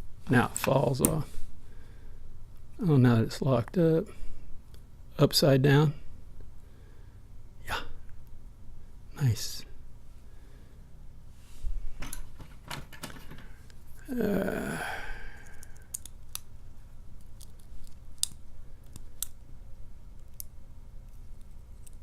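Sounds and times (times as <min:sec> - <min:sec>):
small metal lock parts clicking: 0:15.4 - 0:16.5.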